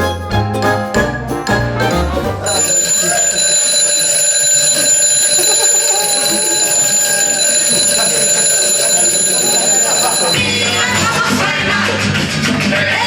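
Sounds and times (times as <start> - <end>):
alarm clock ringing: 2.5 - 10.4
tinkly jingling tune: 2.5 - 10.4.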